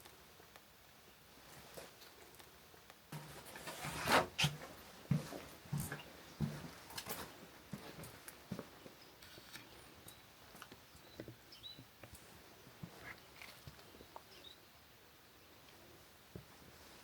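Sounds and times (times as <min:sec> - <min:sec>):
footsteps on a path: 0:04.4 - 0:09.8.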